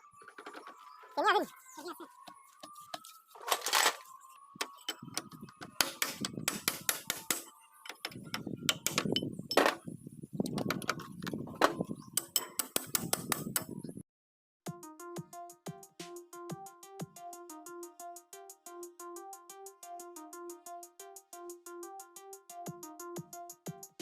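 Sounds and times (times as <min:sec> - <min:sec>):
metal tools clinking: 0:12.3 - 0:12.8
electronic music: 0:14.8 - 0:24.0.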